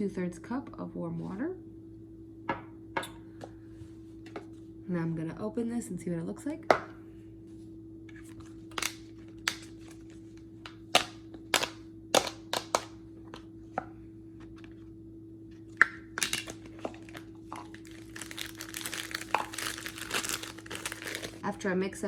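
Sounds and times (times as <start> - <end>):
plastic crinkling: 8.1 - 12.9, 16.2 - 21.4
plastic packaging clicking and snapping: 8.3 - 10.1, 10.7 - 13.0, 16.2 - 21.4.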